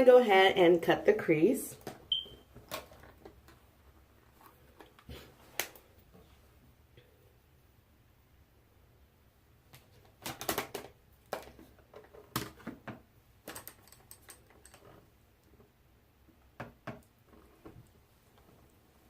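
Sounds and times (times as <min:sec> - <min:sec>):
makeup brushes clicking and tapping: 0:09.7 - 0:15.0.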